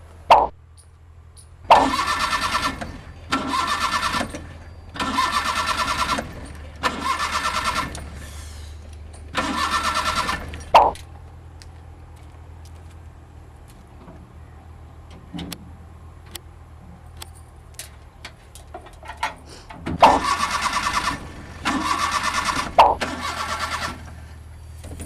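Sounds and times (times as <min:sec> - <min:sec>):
car engine cranking: 0:01.4 - 0:11.2, 0:18.9 - 0:25.0.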